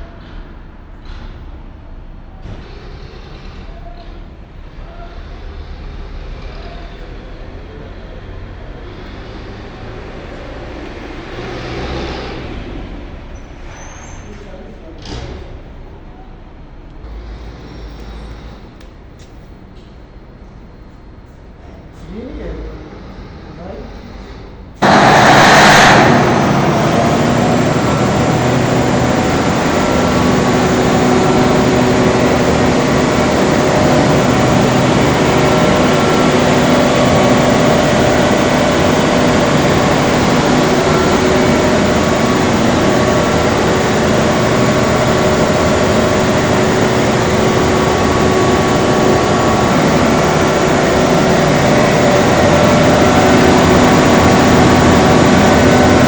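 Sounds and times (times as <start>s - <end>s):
diesel generator running: 0.0s - 20.0s, 20.7s - 56.0s
faint steady tones: 24.8s - 56.0s.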